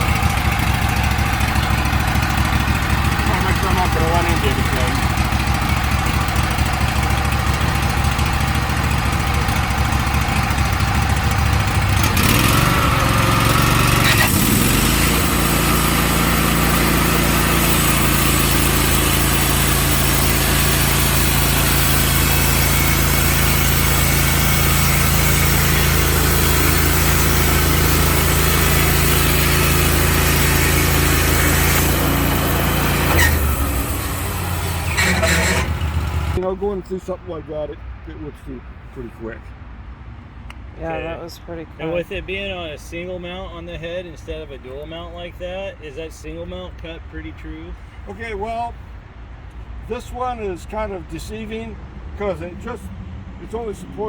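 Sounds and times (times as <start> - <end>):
band saw cutting log: 0.0 - 36.4
sawmill engine running: 0.0 - 37.4.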